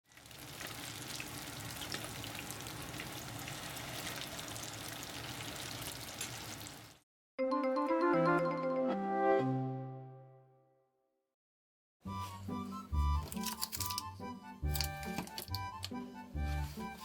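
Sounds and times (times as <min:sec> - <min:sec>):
deep-frying sizzle in oil: 0:00.0 - 0:07.0
music jingle: 0:07.4 - 0:10.6, 0:15.5 - 0:17.0.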